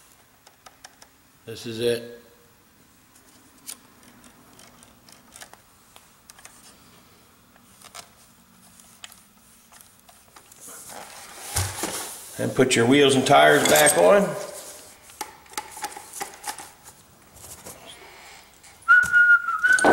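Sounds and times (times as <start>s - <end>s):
small parts clicking: 3.6s - 5.6s
rustling: 7.6s - 19.9s.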